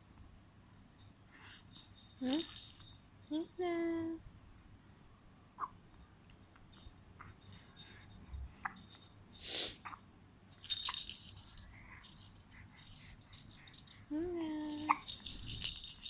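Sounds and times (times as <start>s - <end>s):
baby rattle jingling: 1.5s - 3.6s, 6.6s - 9.4s, 10.5s - 16.0s.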